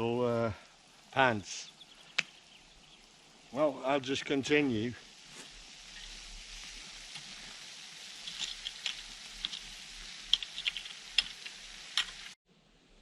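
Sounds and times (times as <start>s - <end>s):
steady hiss: 0.0s - 13.0s
soil crunches and ticks: 1.1s - 3.6s, 5.1s - 12.4s.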